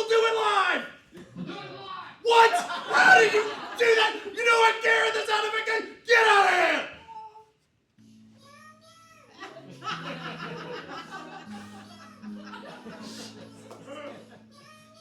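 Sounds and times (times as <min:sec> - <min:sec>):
laughter: 0:01.1 - 0:01.9, 0:02.5 - 0:04.4, 0:09.4 - 0:14.5
music with low held notes: 0:08.0 - 0:15.0.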